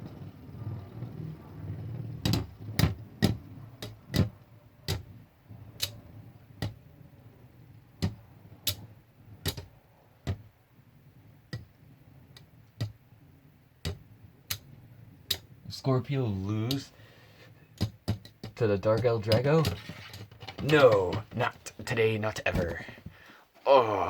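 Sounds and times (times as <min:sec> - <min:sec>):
low whir of spinning tops: 0:00.0 - 0:15.7.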